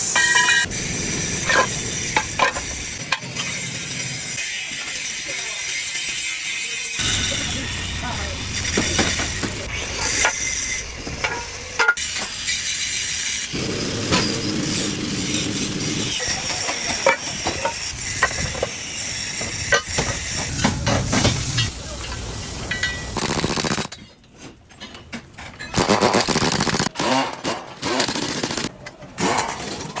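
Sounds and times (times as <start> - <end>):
mechanical drone: 0.6 - 4.4, 7.0 - 11.8, 12.4 - 23.9.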